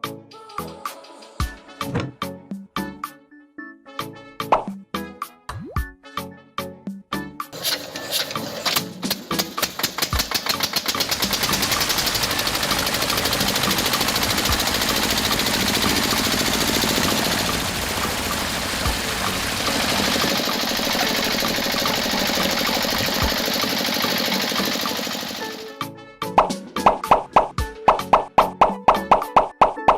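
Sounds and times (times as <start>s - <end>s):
small engine running: 7.6s - 25.7s.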